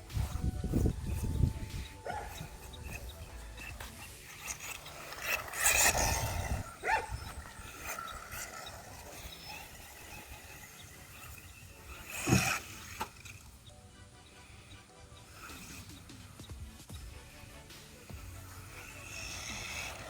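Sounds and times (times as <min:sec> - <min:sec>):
rc truck motor whirring: 0:00.0 - 0:20.0.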